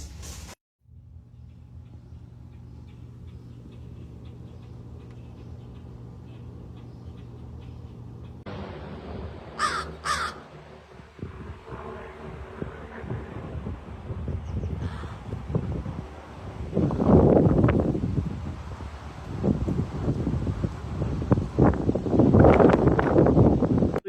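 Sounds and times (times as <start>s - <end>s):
low background rumble: 0.9s - 24.0s
crow cawing: 9.6s - 10.5s, 14.8s - 15.3s.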